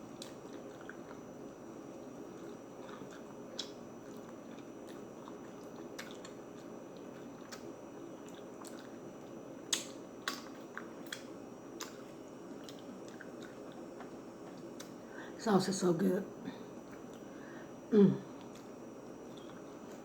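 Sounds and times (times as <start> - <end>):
person chewing with mouth smacks: 0.1 - 1.3, 2.0 - 15.0, 18.3 - 20.0.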